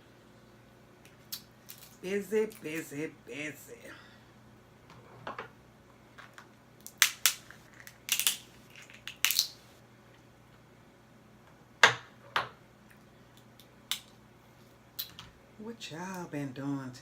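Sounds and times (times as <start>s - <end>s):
crab shells cracking: 6.3s - 9.7s, 13.3s - 14.2s.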